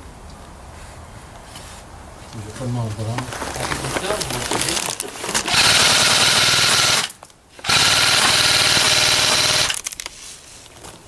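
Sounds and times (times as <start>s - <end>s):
airsoft gun automatic bursts: 5.4s - 9.9s.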